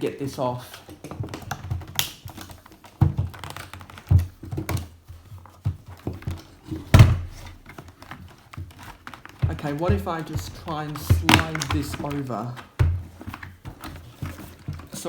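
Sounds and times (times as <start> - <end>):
plastic toy clicks and knocks: 7.4 - 15.0.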